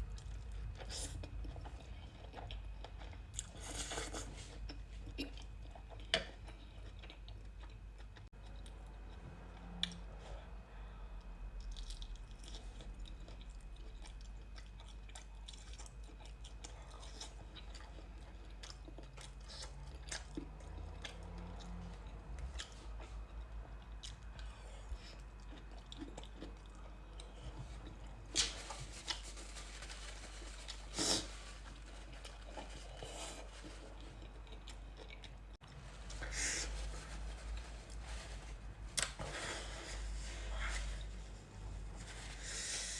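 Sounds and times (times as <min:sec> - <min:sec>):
chewing noodles: 0:00.0 - 0:10.0, 0:11.6 - 0:38.4
steady low hum: 0:00.0 - 0:42.9.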